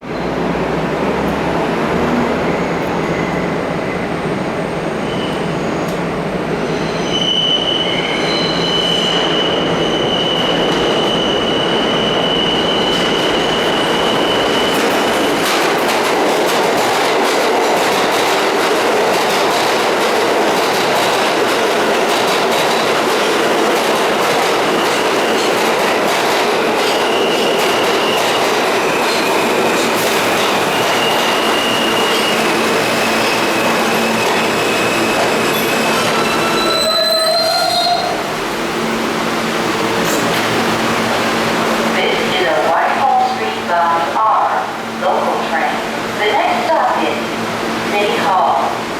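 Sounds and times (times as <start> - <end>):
train wheels rumbling on rail: 0.0 - 48.9
high wheel squeal: 6.6 - 15.4, 30.4 - 38.3.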